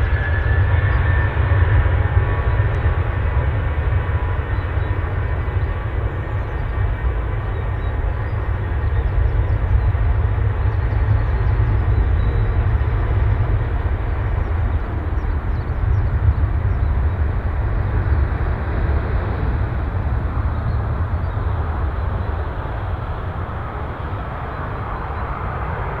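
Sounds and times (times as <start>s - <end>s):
jet engines at takeoff: 0.0s - 26.0s.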